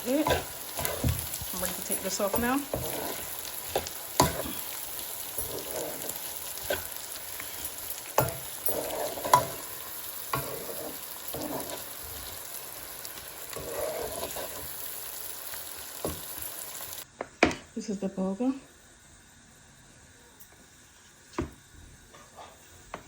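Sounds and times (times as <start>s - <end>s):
pot sizzling while stirred: 0.0s - 23.0s.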